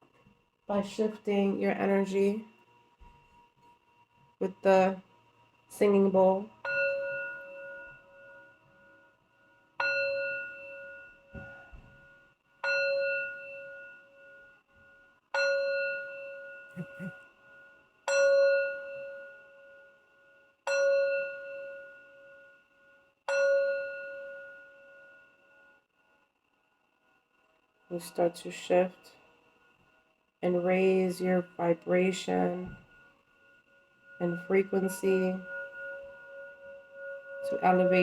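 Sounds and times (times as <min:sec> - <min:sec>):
singing bowl ringing: 0:05.8 - 0:26.0, 0:29.0 - 0:38.0.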